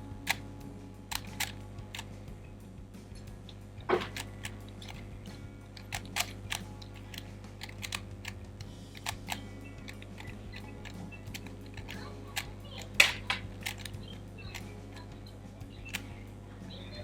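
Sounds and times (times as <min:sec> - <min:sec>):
steady low hum: 0:00.0 - 0:17.0
puzzle cube plastic clicks: 0:01.1 - 0:02.2, 0:03.8 - 0:16.2.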